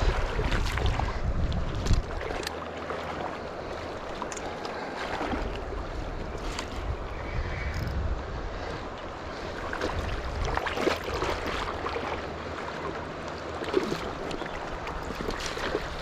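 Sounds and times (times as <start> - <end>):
wind buffeting microphone: 0.0 - 2.4, 5.3 - 11.8
rushing river water: 0.0 - 16.0.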